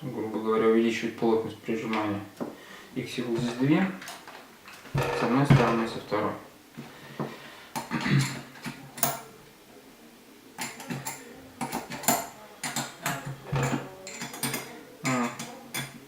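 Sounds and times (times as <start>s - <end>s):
metal parts clinking and clanking: 10.6s - 16.0s.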